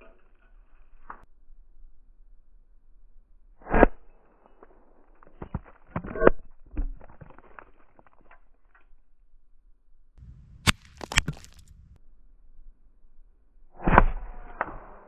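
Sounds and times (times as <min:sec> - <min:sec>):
bb gun pop: 0:10.6 - 0:11.6.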